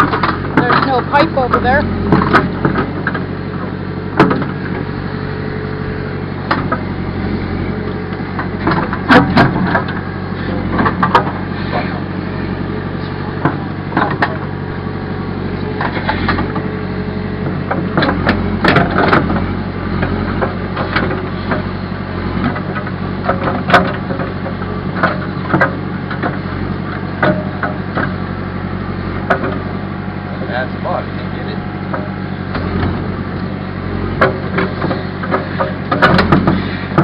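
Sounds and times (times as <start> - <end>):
machine knocks and clanks: 0.0 - 4.9, 6.4 - 6.9, 8.0 - 12.1, 13.3 - 14.6, 15.6 - 16.8, 17.4 - 28.4, 29.1 - 29.8, 30.5 - 37.0
backhoe engine running: 0.0 - 37.0.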